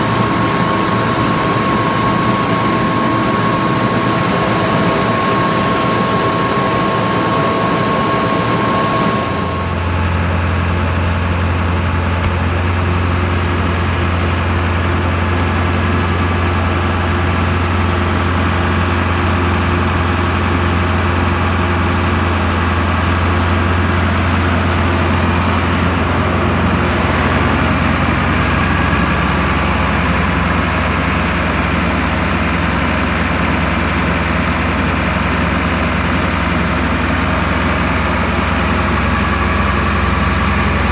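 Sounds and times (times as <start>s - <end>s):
mechanical whine: 0.0s - 10.2s, 22.8s - 32.3s
heavy low engine drone: 0.0s - 40.9s.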